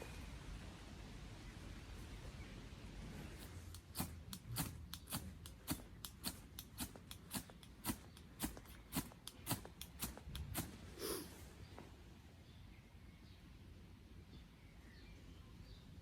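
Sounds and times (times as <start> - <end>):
campfire crackling: 3.3 - 11.3.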